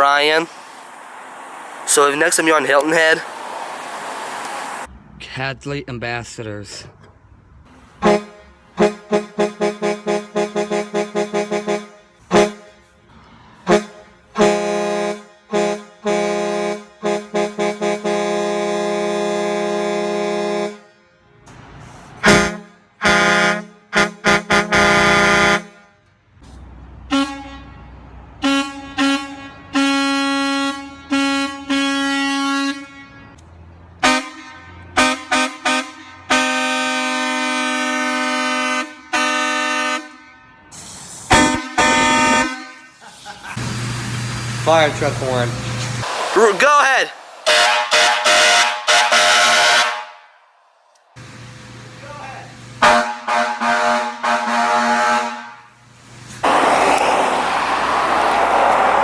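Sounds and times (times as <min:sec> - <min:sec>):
truck air horns honking: 0:07.7 - 0:26.0, 0:27.0 - 0:43.8, 0:44.6 - 0:56.7.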